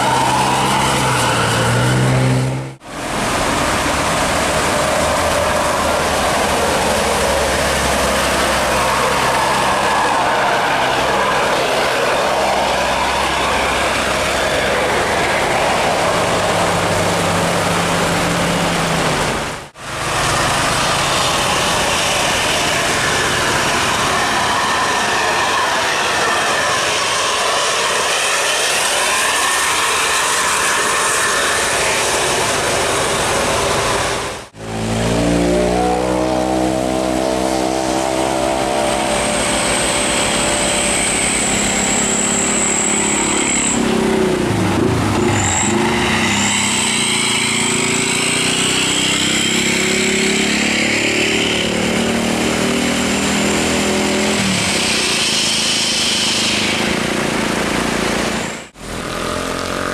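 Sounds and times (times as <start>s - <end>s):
bus engine running: 0.0s - 59.9s
vehicle and road noise: 0.0s - 59.9s
thin high whine: 20.2s - 59.8s.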